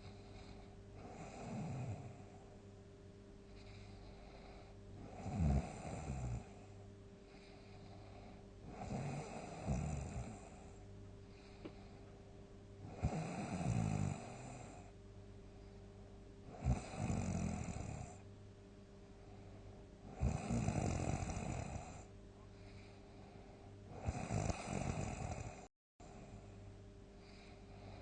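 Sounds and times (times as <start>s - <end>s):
quiet breathing: 0.0s - 18.3s, 19.0s - 28.0s
person snoring loudly: 1.0s - 2.2s, 5.0s - 6.5s, 8.7s - 10.7s, 12.9s - 14.9s, 16.5s - 18.2s, 20.1s - 22.1s, 23.9s - 25.7s.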